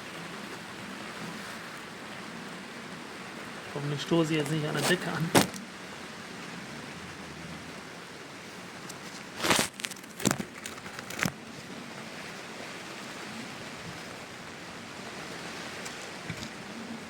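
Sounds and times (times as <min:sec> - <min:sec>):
rain hissing: 0:02.6 - 0:09.6.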